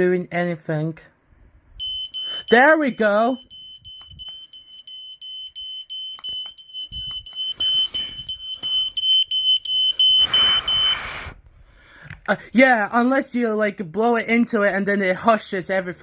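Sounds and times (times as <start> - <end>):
smoke alarm beeping: 1.8 - 11.3
hissing bursts: 7.2 - 11.5.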